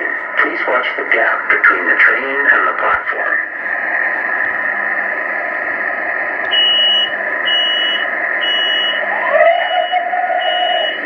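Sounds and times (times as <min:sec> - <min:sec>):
train running noise: 0:00.0 - 0:11.0
high-pitched warning beeps: 0:06.5 - 0:11.0.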